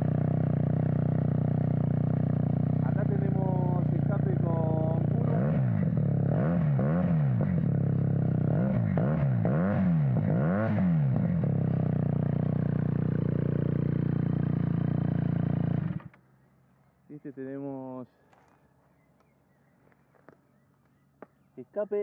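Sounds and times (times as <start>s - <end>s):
motorcycle engine revving and idling: 0.0s - 16.2s.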